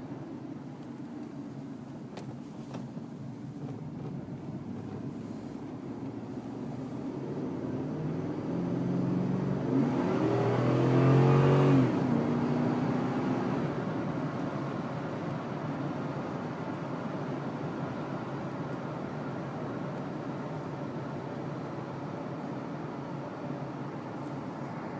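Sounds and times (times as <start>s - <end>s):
vehicle engine passing: 6.4s - 13.3s.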